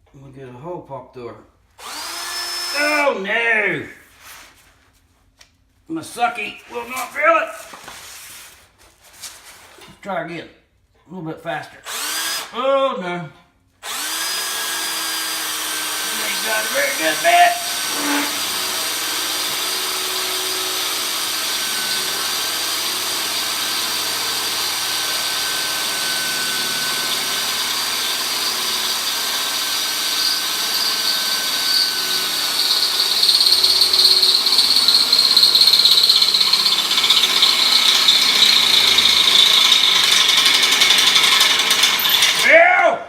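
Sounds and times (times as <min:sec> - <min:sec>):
electric drill boring into steel: 0:01.8 - 0:02.9, 0:11.9 - 0:12.5, 0:13.8 - 0:42.5.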